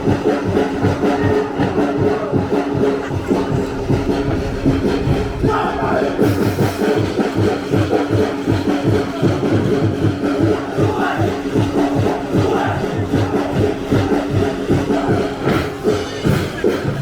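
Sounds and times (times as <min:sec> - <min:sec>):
pounding drums: 0:00.0 - 0:17.0
steady held tones: 0:01.1 - 0:09.2.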